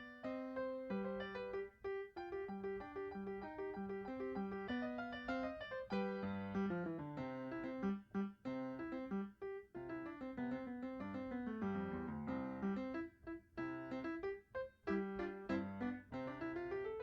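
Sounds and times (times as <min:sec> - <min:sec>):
piano music: 0:00.0 - 0:17.0.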